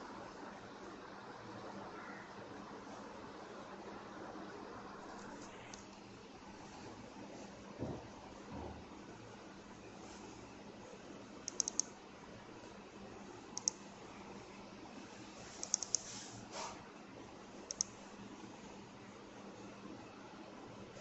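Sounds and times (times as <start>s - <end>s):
small sharp clicks: 11.5s - 11.9s, 13.6s - 13.8s, 15.6s - 16.0s, 17.7s - 18.0s.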